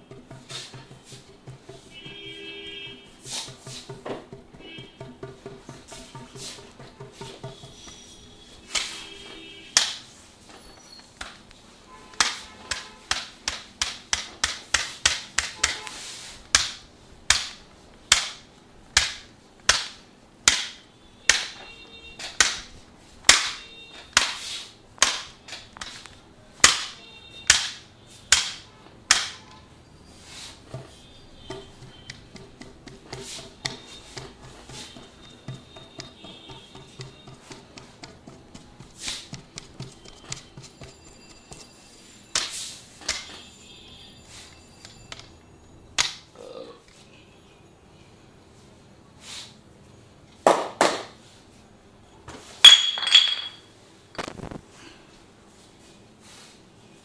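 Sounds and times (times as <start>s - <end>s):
percussive massage strikes on body: 0.0s - 8.0s, 9.7s - 10.2s, 12.2s - 21.6s, 22.2s - 26.0s, 26.6s - 29.4s, 30.6s - 41.7s.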